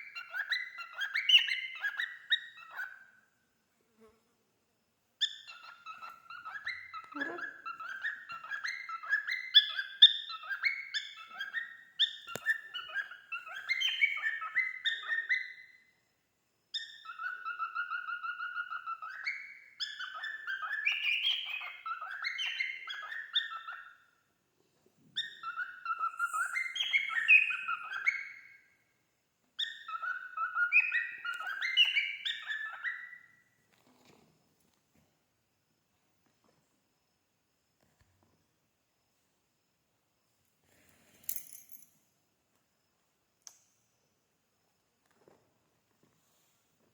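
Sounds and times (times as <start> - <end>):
cockatiel whistling song: 0.0 - 3.2, 5.2 - 15.9, 16.7 - 24.0, 25.2 - 28.7, 29.6 - 33.4.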